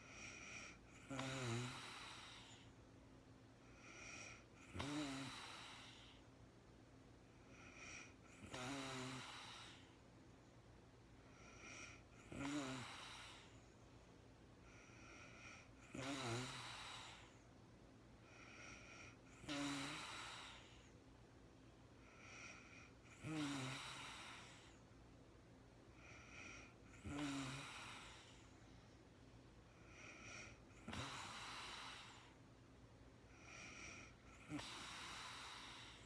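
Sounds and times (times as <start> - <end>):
woman snoring: 0.0 - 2.7, 3.7 - 6.2, 7.5 - 10.0, 11.3 - 13.6, 14.7 - 17.3, 18.3 - 20.9, 22.0 - 24.8, 26.0 - 28.4, 29.8 - 32.4, 33.3 - 36.0
soft breaths: 0.0 - 36.0.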